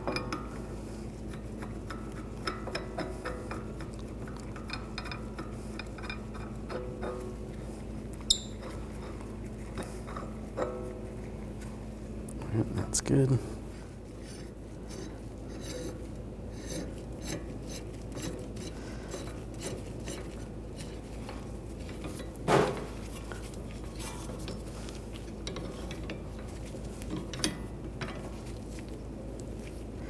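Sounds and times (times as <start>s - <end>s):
loud metallic clank: 22.5s - 23.0s.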